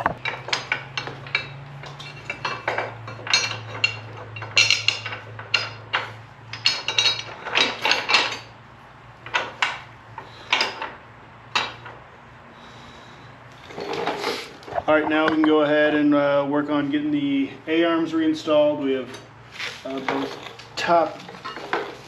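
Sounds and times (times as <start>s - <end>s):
metal parts clinking and clanking: 0.2s - 8.5s.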